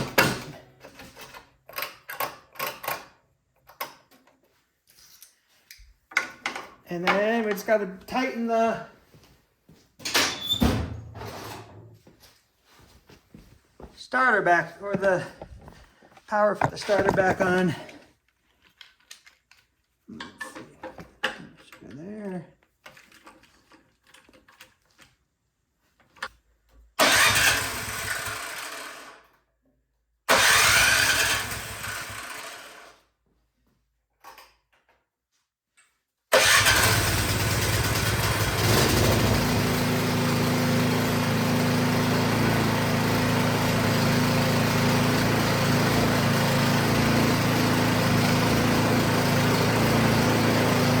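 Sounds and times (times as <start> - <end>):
small engine starting and running: 27.0 - 29.3, 30.3 - 33.0, 36.3 - 51.0.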